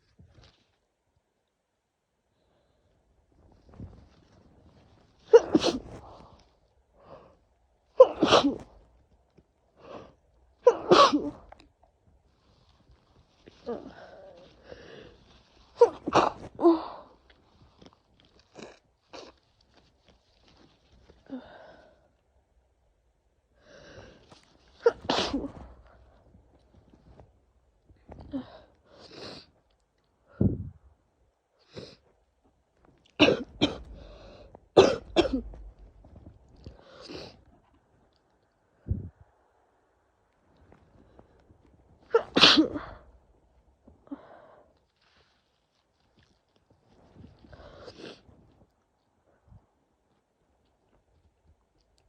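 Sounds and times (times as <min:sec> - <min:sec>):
woman sneezing: 0:05.3 - 0:06.0, 0:08.0 - 0:08.7, 0:10.7 - 0:11.4, 0:24.8 - 0:25.6, 0:42.1 - 0:43.0
breathy sounds: 0:33.4 - 0:37.7.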